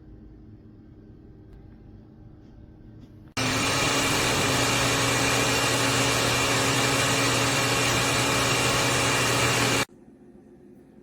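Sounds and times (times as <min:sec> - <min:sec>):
blender motor whirring: 0:03.4 - 0:09.9.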